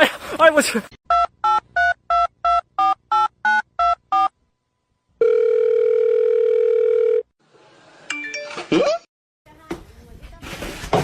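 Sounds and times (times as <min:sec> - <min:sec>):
phone ringing tone: 0:05.2 - 0:07.3.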